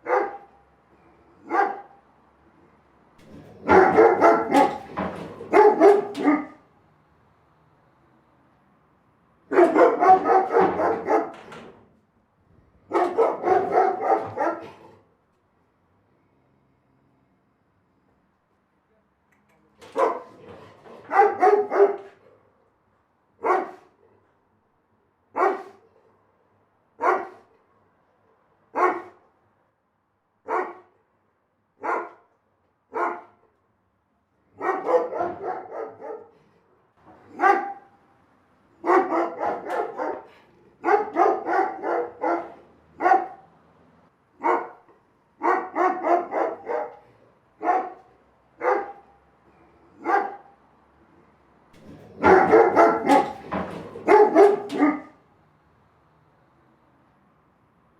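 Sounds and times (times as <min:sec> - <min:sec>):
big dog barking: 0:00.0 - 0:02.1, 0:03.2 - 0:06.7, 0:09.4 - 0:11.8, 0:12.8 - 0:15.1, 0:19.8 - 0:22.6, 0:23.4 - 0:24.3, 0:25.3 - 0:26.2, 0:27.0 - 0:27.6, 0:28.7 - 0:29.3, 0:30.4 - 0:31.0, 0:31.8 - 0:33.6, 0:34.4 - 0:38.0, 0:38.7 - 0:43.6, 0:44.3 - 0:50.7, 0:51.8 - 0:55.2.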